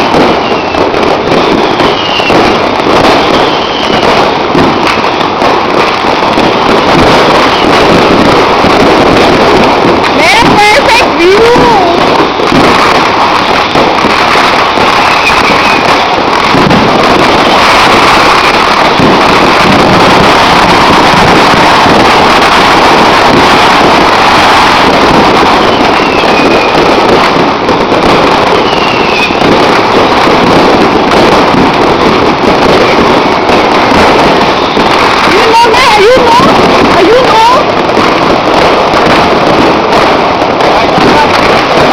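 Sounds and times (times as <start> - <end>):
fireworks and firecrackers banging: 0.0 - 41.9.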